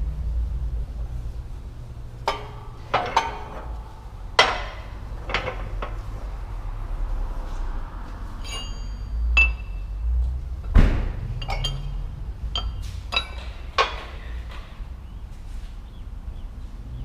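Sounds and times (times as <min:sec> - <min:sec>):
metal tools clinking: 0:02.3 - 0:06.1, 0:08.4 - 0:09.9, 0:11.4 - 0:14.7.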